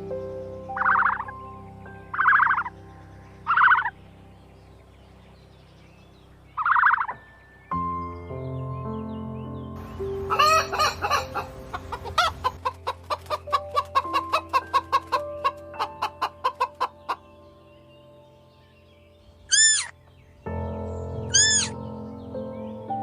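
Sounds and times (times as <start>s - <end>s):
background music: 0.0s - 23.0s
chicken clucking and squawking: 10.3s - 17.3s, 19.5s - 19.9s, 21.3s - 21.8s.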